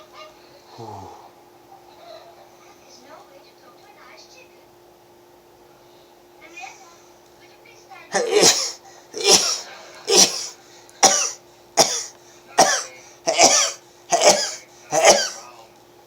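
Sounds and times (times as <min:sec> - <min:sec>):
person sneezing: 0:08.2 - 0:15.5.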